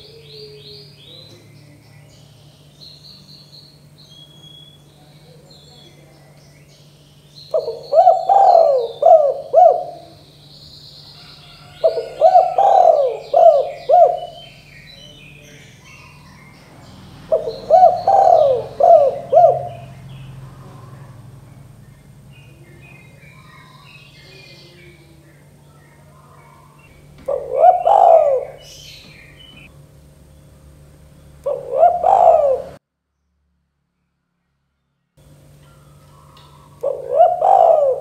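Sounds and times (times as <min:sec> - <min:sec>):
dove cooing: 0:00.0 - 0:01.8, 0:07.5 - 0:10.4, 0:11.1 - 0:29.7, 0:31.4 - 0:32.8, 0:35.7 - 0:38.0
small birds chirping: 0:00.0 - 0:32.8, 0:35.2 - 0:38.0.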